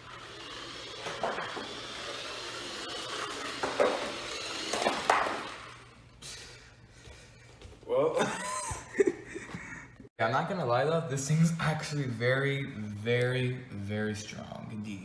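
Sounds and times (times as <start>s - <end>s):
toy car electric motor whining: 0.0s - 6.2s
toy car bumping into track: 0.5s - 5.8s.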